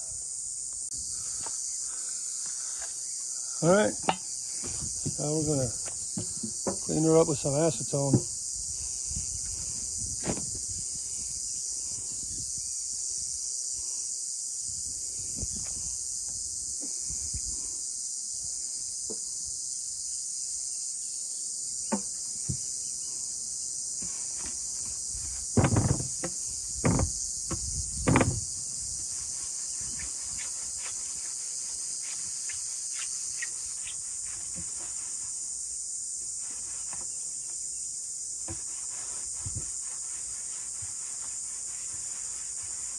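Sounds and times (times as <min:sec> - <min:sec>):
crickets and insects chirping: 0:00.0 - 0:42.9.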